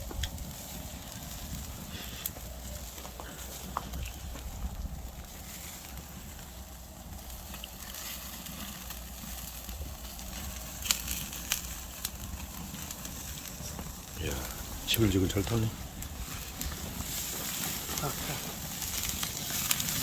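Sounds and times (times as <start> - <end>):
fire crackling and popping: 0.0 - 20.0
meat sizzling on a grill: 0.0 - 20.0
wind rumble on microphone: 0.0 - 20.0.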